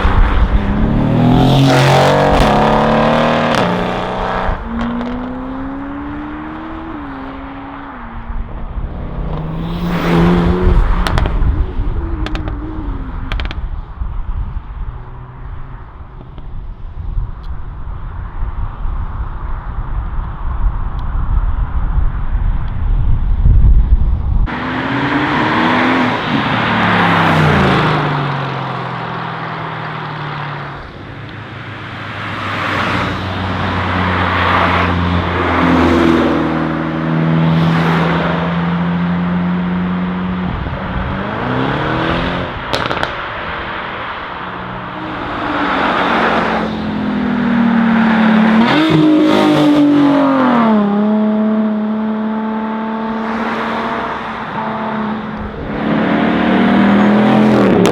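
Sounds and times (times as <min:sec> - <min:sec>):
sports cars revving past: 0:00.0 - 0:14.1, 0:24.5 - 0:57.9
sharp crack: 0:42.6 - 0:44.5.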